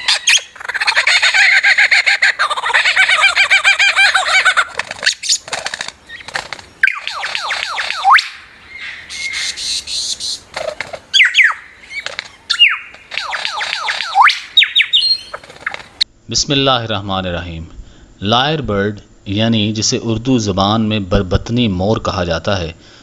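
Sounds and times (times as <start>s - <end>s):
bird whistling calls: 0.0s - 16.0s
bird fast rattling: 0.1s - 8.4s, 9.2s - 16.0s
bird sharp clicks: 4.7s - 16.1s.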